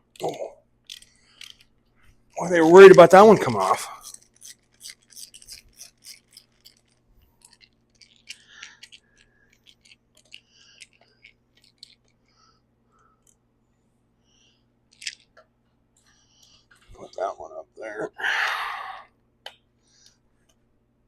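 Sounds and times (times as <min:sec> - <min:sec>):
hand tools clicking and scraping: 0:02.4 - 0:12.1.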